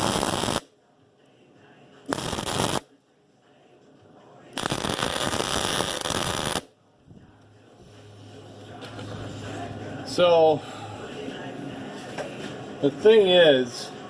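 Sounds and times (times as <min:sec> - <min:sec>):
welder arcing crackling: 0:00.0 - 0:00.7, 0:02.1 - 0:02.9, 0:04.6 - 0:06.7.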